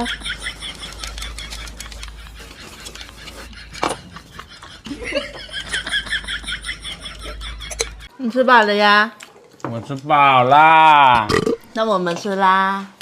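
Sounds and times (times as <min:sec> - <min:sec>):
quick rhythmic laughter: 0:00.0 - 0:08.1.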